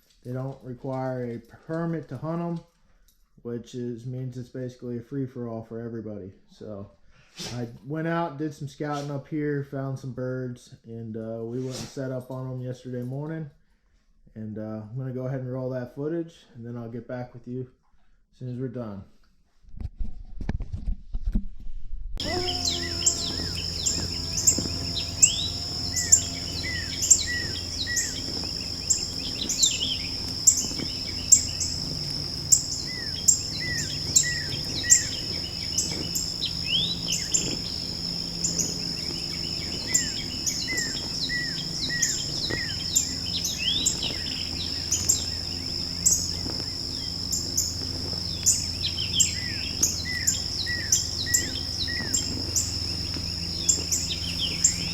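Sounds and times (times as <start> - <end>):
birds chirping and singing: 22.2 - 54.9
high-pitched insect drone: 22.2 - 54.9.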